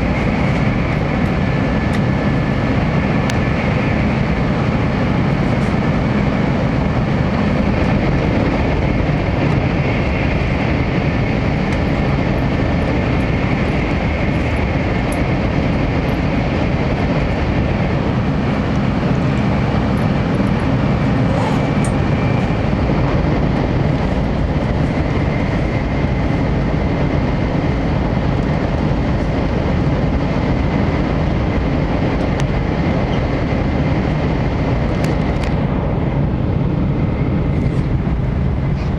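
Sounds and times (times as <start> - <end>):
faint high whine: 0.0 - 8.6, 17.8 - 23.1
moving train rumble: 0.0 - 38.9.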